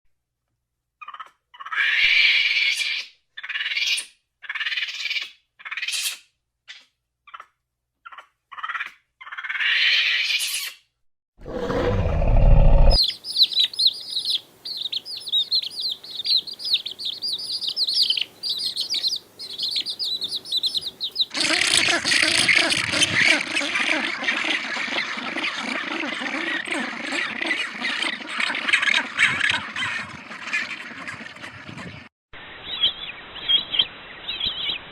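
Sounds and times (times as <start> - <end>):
small birds twittering: 12.8 - 28.3
short harsh animal calls: 21.3 - 27.6.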